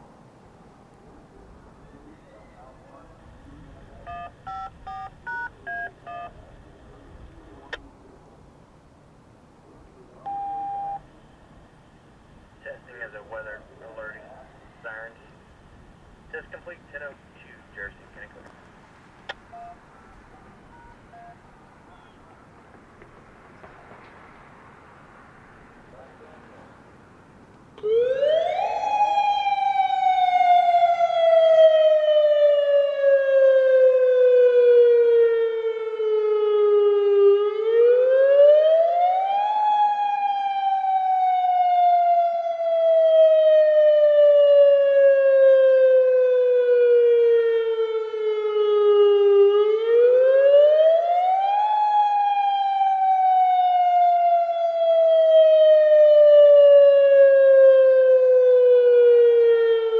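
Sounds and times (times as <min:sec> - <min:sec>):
warning siren wailing: 0:01.8 - 0:07.8, 0:27.8 - 0:59.9.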